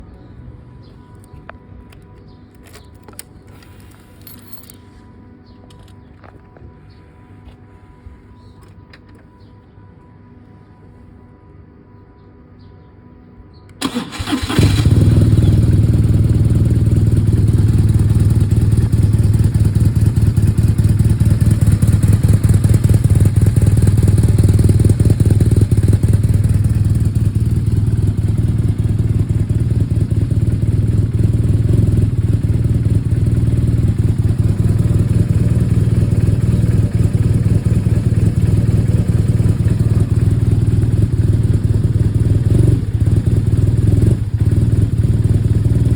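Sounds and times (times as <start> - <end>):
motorcycle engine starting and idling: 0.9 - 4.8, 13.8 - 45.9.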